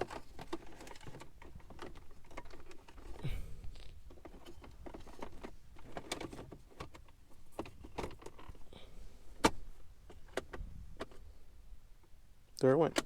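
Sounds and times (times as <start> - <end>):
plastic parts clicking and rattling: 0.0 - 8.6.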